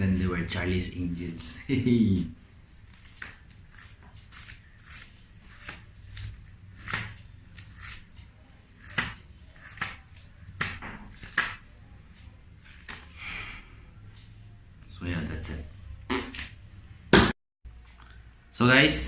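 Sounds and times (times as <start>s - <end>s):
photo album pages rustling: 2.8s - 8.1s, 8.7s - 11.6s, 12.6s - 13.2s.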